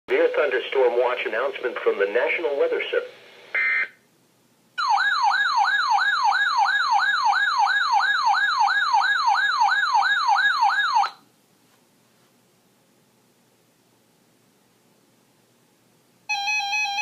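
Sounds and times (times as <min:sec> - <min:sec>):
electronic siren yelping: 0:03.6 - 0:04.0, 0:04.8 - 0:11.2.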